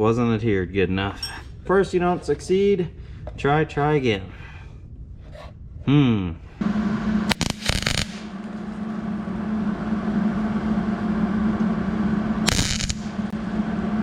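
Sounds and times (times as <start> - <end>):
steady low hum: 0.0 - 14.0
electric welder crackling: 7.3 - 9.0, 12.4 - 13.3.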